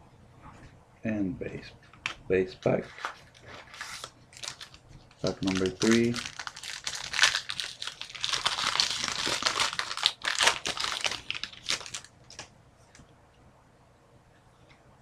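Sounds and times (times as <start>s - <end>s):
plastic wrapper tearing and crinkling: 2.9s - 12.5s.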